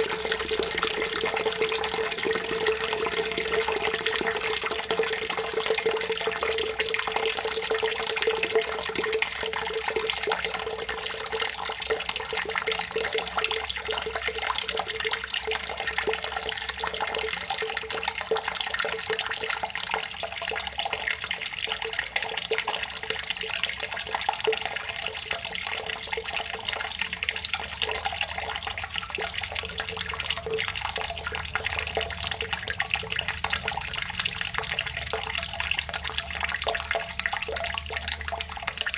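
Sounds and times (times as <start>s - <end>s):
running water splashing: 0.0s - 6.8s.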